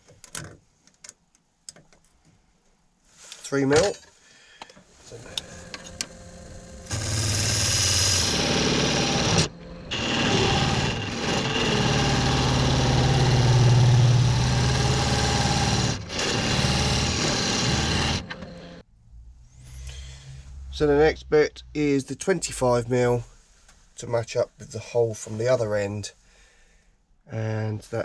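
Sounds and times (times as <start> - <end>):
lathe tool cutting wood: 5.1 - 18.8
lathe motor hum: 5.2 - 18.8.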